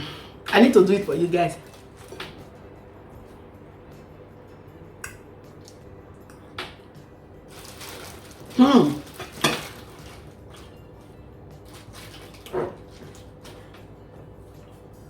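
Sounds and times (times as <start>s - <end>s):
bowls and cutlery clinking: 8.8s - 10.7s.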